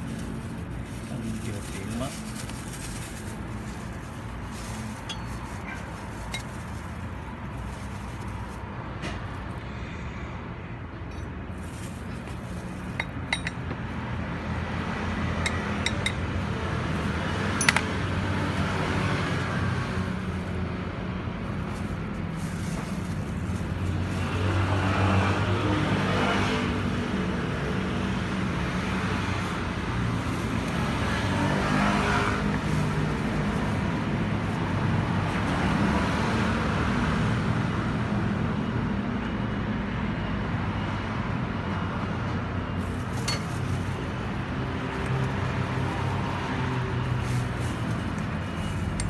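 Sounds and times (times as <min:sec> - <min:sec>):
engine running steadily: 0:00.0 - 0:35.9
sharp metallic clinks: 0:17.6 - 0:17.9.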